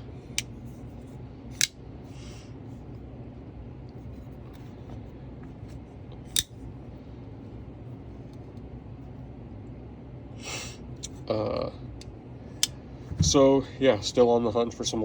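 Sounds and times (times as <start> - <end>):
steady low hum: 0.0 - 15.0
folding knife metallic click: 1.6 - 1.8, 6.3 - 6.5.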